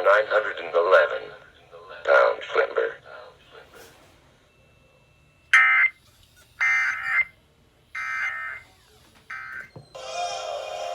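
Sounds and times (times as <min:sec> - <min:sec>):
buzzy digital tone bursts: 0:06.6 - 0:07.3, 0:08.0 - 0:08.7, 0:09.3 - 0:09.7.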